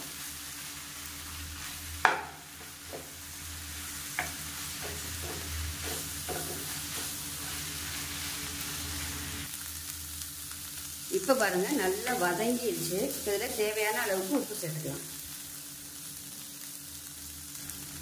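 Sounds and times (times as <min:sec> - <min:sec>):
soft sizzle of frying: 0:00.0 - 0:18.0
utensil scraping a pan: 0:04.2 - 0:08.4.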